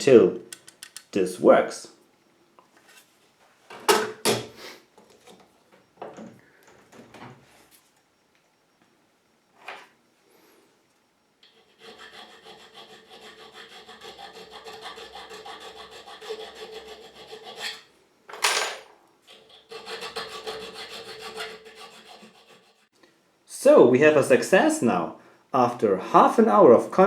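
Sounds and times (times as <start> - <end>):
metal file rasping on key: 11.4 - 17.9, 19.3 - 22.9.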